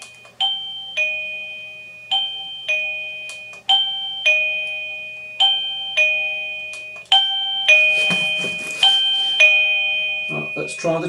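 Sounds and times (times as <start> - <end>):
doorbell ding-dong chime: 0.0 - 11.0.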